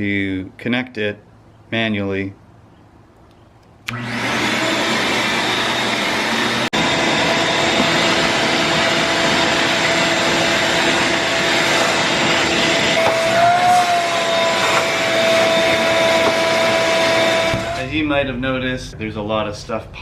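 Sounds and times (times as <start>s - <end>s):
shop vac motor whine: 3.8s - 17.9s.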